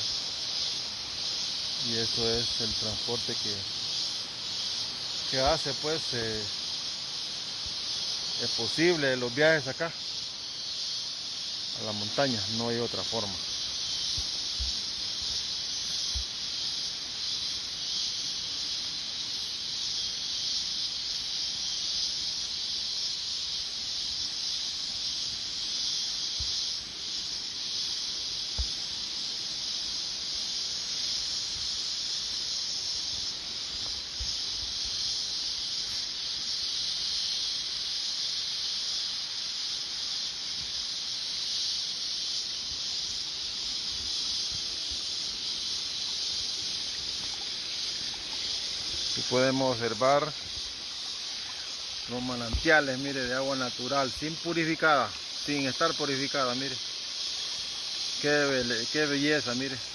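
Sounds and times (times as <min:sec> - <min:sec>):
cicadas buzzing: 0:00.0 - 0:59.9.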